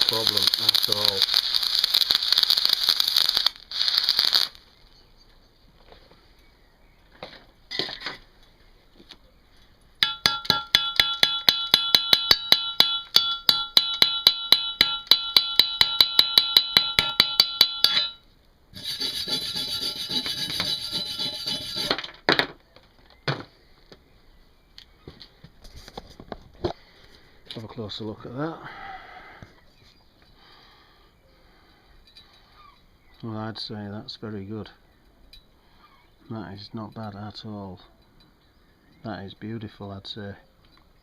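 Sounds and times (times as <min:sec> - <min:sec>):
hammer tapping on steel: 0:10.0 - 0:18.2
wire brush scraping metal: 0:17.8 - 0:22.1.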